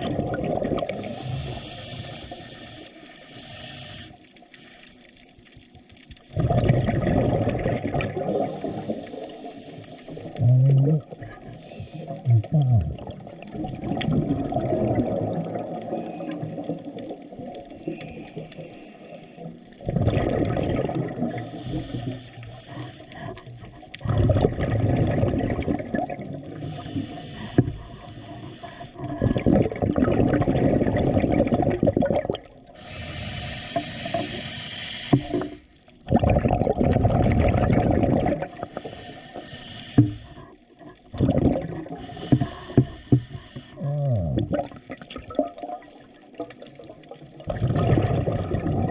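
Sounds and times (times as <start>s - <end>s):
muffled water sloshing: 4.4s - 48.9s.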